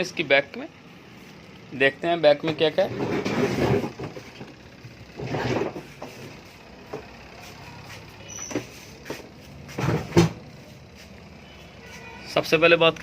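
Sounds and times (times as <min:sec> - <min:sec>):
scuffing and scraping: 0:10.6 - 0:12.3.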